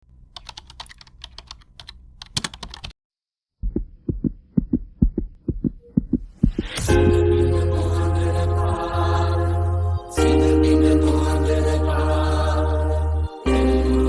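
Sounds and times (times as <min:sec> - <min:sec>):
keyboard typing clicks: 0:00.3 - 0:02.9
fast heartbeat thumps: 0:03.6 - 0:06.8.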